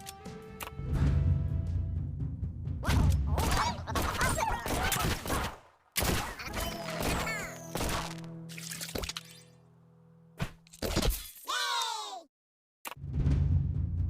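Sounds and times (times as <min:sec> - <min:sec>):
music: 0:00.0 - 0:04.0, 0:06.4 - 0:10.7, 0:12.9 - 0:14.0.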